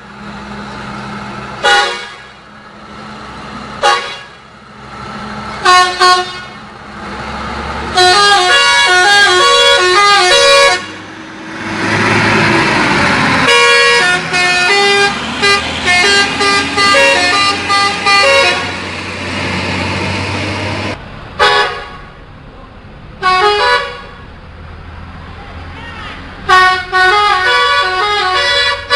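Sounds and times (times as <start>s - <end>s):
rushing noise: 0.0s - 23.2s
multi-tone musical bus horn: 1.6s - 2.4s, 3.8s - 4.5s, 5.6s - 6.7s, 7.9s - 11.1s, 13.4s - 18.9s, 21.4s - 22.1s, 23.2s - 24.3s, 25.7s - 28.9s.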